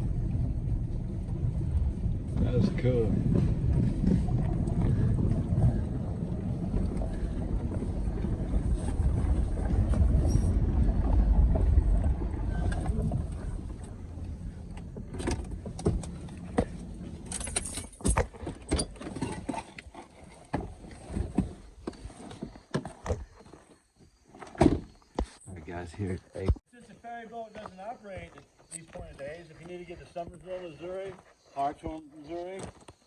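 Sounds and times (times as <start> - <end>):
car driving with low rumble: 0.0 - 22.0.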